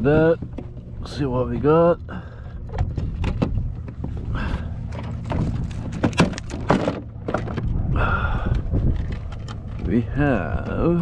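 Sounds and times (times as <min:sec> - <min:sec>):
low steady rumble: 0:00.0 - 0:11.0
knocks and scrapes on plastic kayak: 0:02.7 - 0:07.8.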